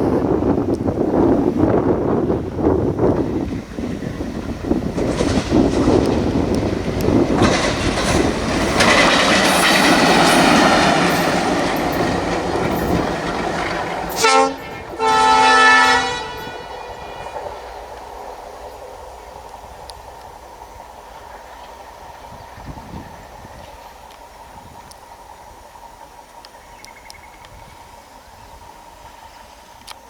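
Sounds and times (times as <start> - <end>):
locomotive engine and wheel noise: 0.0 - 30.0
locomotive horn blasts: 14.1 - 17.8.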